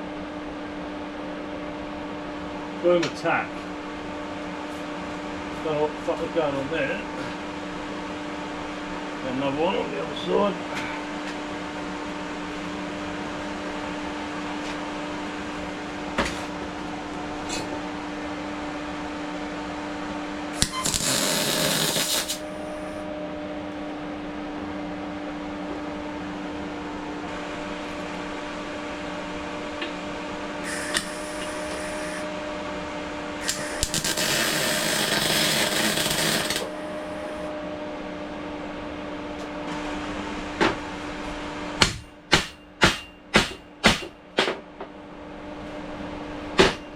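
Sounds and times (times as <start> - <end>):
welding machine humming: 20.5 - 23.1, 29.2 - 37.5
welding arc crackle: 20.6 - 23.0, 30.6 - 32.2, 33.4 - 37.4.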